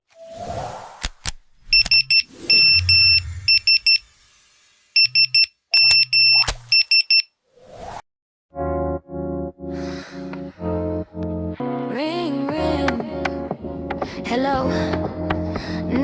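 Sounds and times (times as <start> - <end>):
whoosh: 0.2 - 4.9
phone ringtone beeps: 1.7 - 4.0, 5.0 - 7.3
low buzz: 1.8 - 5.8.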